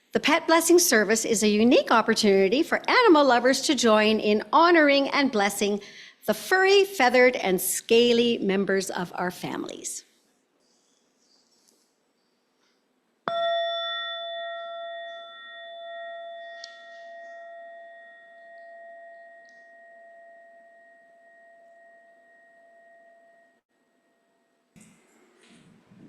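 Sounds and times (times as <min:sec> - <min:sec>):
bell ringing: 0:13.3 - 0:23.6.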